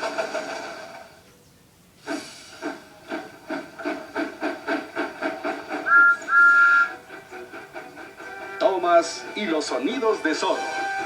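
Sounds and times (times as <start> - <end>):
steam locomotive chuffing: 0.0 - 1.3, 1.9 - 11.0
steam whistle toots: 5.7 - 11.0.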